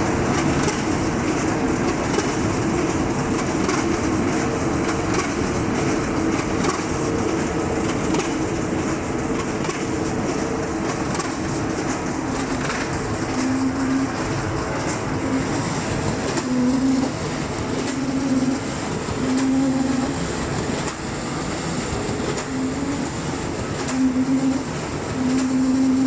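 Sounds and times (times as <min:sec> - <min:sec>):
printing machine running: 0:00.0 - 0:26.0.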